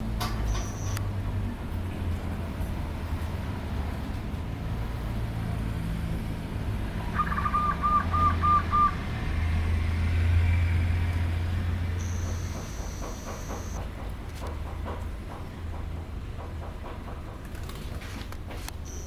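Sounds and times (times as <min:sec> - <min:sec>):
dove cooing: 0:07.1 - 0:09.0.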